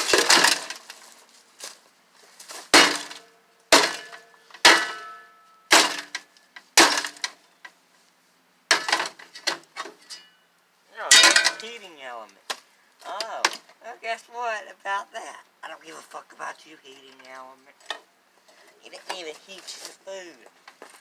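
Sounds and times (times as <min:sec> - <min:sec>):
heavy blows on metal casing: 0:02.7 - 0:07.4, 0:11.1 - 0:11.8.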